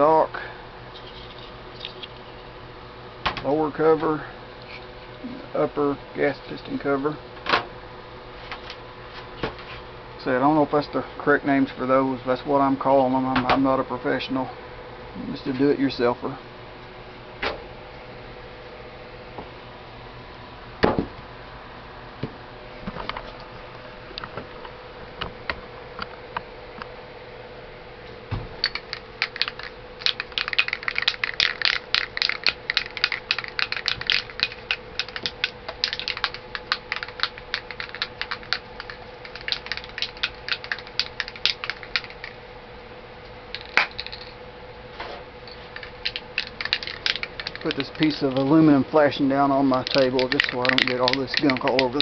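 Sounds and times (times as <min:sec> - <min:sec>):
faint steady hum: 0:00.0 - 0:52.0
rapid clicking and rattling: 0:28.6 - 0:42.4, 0:45.5 - 0:48.7, 0:49.6 - 0:52.0.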